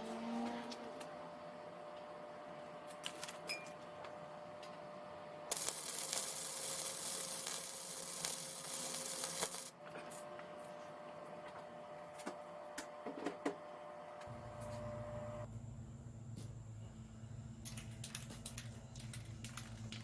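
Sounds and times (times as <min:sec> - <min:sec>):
welding arc crackling: 0:05.5 - 0:09.8.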